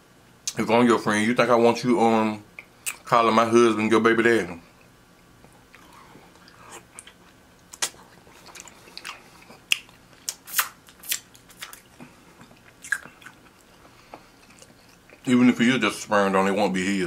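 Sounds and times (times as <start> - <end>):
sharp crunching snaps: 2.6 - 3.1, 4.8 - 15.3
chewing seafood: 4.8 - 15.3.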